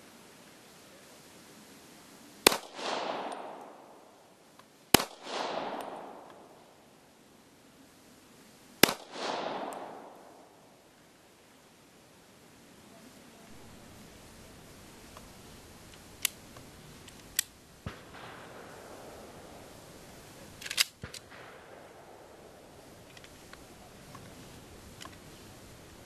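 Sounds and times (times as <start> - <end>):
pistol shots with echo: 2.4 - 4.0, 4.9 - 6.6, 8.8 - 10.6, 17.8 - 19.7, 20.8 - 22.8.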